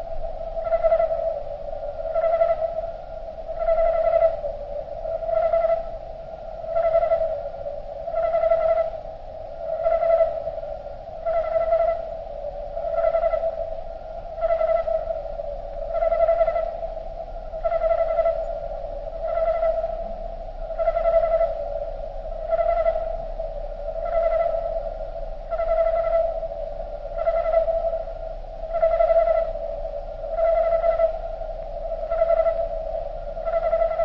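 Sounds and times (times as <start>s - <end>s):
crickets chirping: 0.0s - 34.0s.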